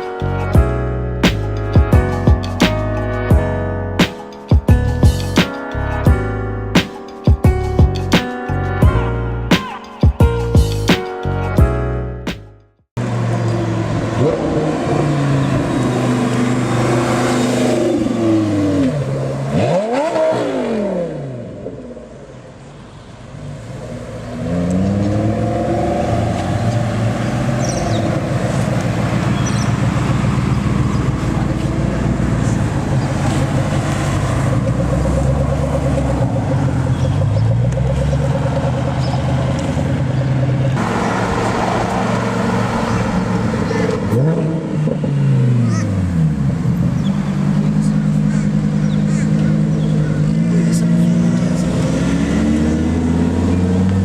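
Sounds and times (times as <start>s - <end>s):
car engines revving past: 13.0s - 54.0s.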